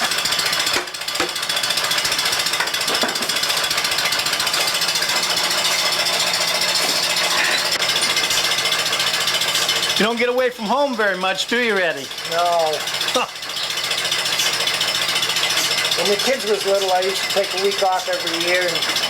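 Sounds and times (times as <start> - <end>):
milking machine mechanical chatter: 0.0 - 19.0.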